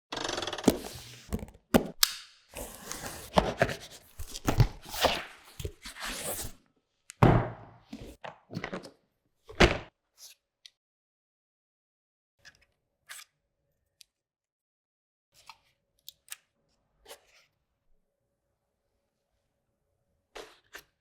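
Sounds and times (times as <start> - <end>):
box being opened: 0.6 - 6.6
packaging rustling: 0.7 - 2.0, 2.6 - 6.6.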